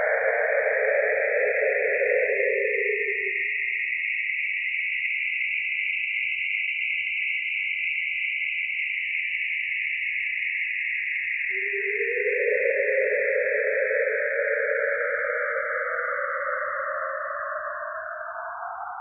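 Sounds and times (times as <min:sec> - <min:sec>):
eerie airy hissing drone: 0:00.0 - 0:03.7, 0:11.5 - 0:18.9.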